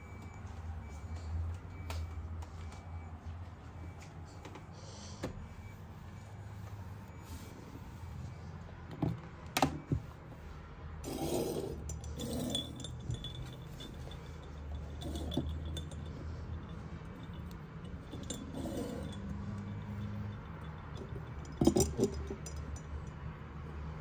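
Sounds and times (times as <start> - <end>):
dishes clinking and knocking: 11.1 - 16.1, 21.0 - 22.8.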